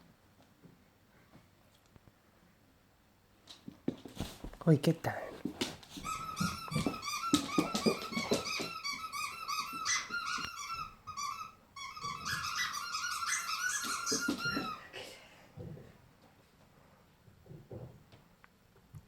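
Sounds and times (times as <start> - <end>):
puppy whining: 5.4 - 14.9.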